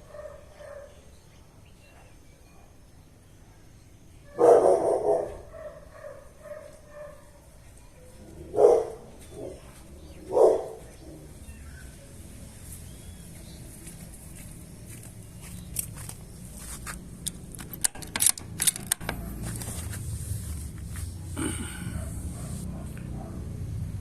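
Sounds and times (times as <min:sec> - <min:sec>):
dog barking: 0:00.0 - 0:01.1, 0:04.3 - 0:12.2, 0:19.1 - 0:19.5, 0:21.8 - 0:23.6
dog yelping: 0:04.3 - 0:07.2.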